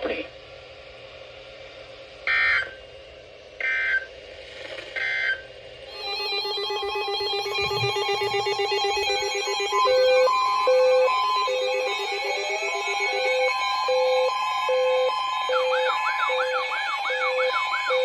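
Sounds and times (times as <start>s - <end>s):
trilling electronic alert tone: 5.9s - 17.9s
screeching digital data bursts: 5.9s - 18.0s.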